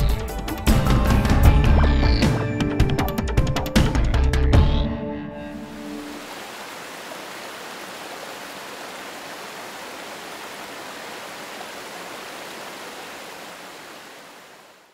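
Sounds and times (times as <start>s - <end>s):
rushing whitewater: 5.6s - 14.9s.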